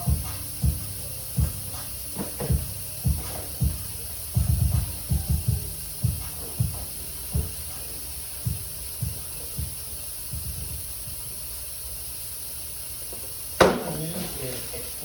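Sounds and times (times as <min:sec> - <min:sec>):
rap song bass beat: 0:00.0 - 0:11.8
steady hiss: 0:00.0 - 0:15.0.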